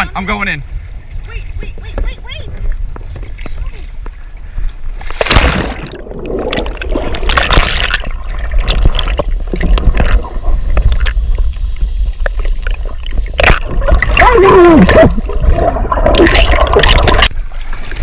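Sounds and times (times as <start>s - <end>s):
water gurgling and sloshing: 0.1s - 18.0s
person splashing into water: 5.0s - 10.3s, 13.3s - 18.0s.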